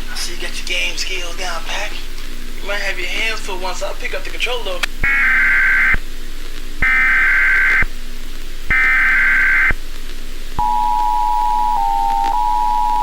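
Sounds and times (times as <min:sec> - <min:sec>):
screeching digital data bursts: 0:02.6 - 0:06.0, 0:06.8 - 0:07.9, 0:08.7 - 0:09.8
two-tone alert signal: 0:10.6 - 0:13.0.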